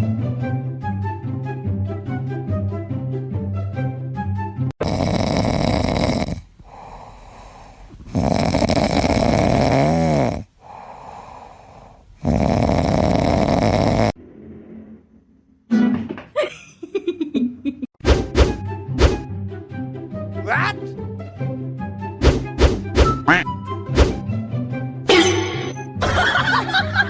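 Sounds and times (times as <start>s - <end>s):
loud snoring: 4.7s - 15.2s
quiet breaths: 6.0s - 14.1s.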